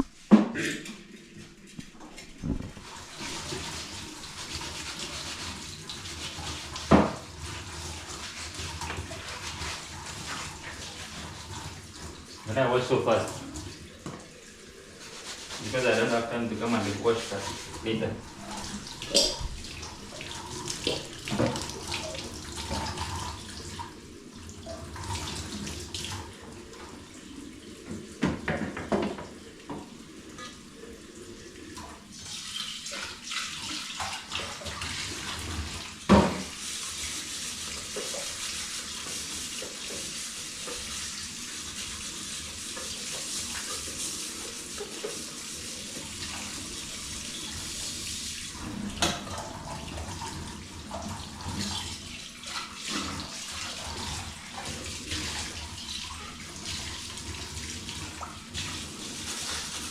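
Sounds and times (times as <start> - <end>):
water running into sink: 0.8 - 59.9
dishes knocking and clinking: 19.0 - 19.5, 28.2 - 29.9, 36.1 - 36.5, 49.0 - 49.5.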